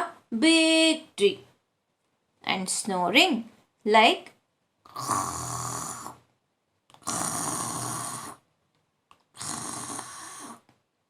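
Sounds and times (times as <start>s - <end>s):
mimicked snoring: 4.9s - 6.2s, 6.9s - 8.4s, 9.3s - 10.7s.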